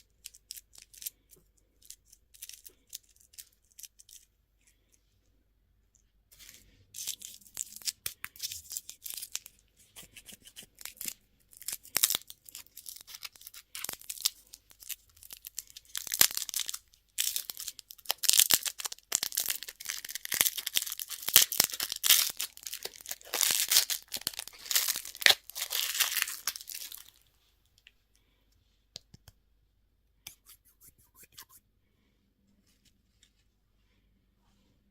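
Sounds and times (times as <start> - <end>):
candy wrapper crinkling: 0.0 - 4.3, 6.4 - 27.9.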